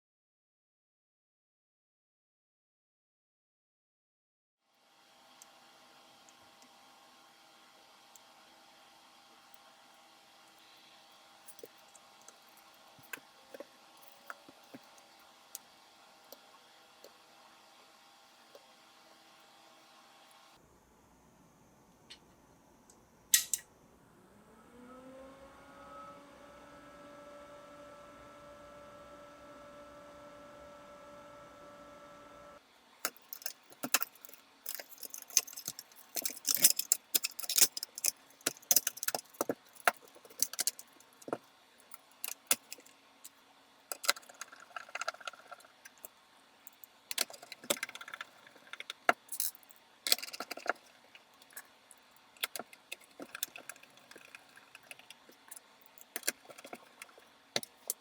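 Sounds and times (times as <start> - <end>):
small metal parts clattering: 33.1 - 46.1, 46.7 - 51.7, 52.4 - 58.0.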